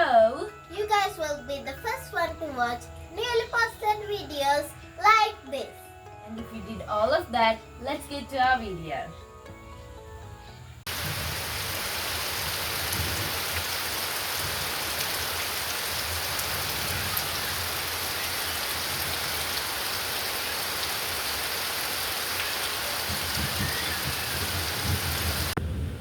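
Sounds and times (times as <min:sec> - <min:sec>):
rain falling: 0:10.9 - 0:26.0.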